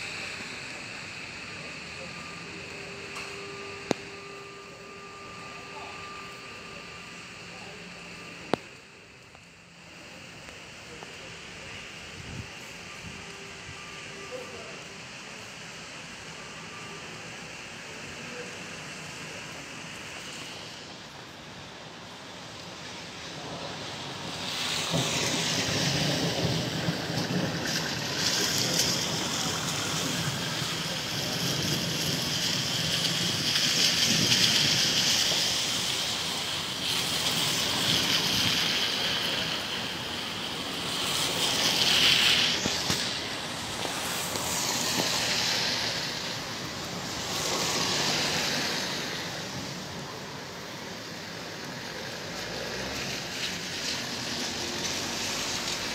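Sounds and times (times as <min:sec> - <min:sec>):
heavy rain pouring: 0:00.0 - 0:55.9.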